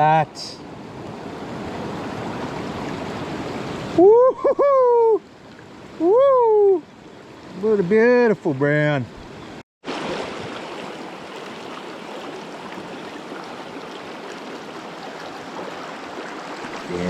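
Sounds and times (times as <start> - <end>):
river water running over rocks: 0.0 - 4.0, 5.2 - 17.0.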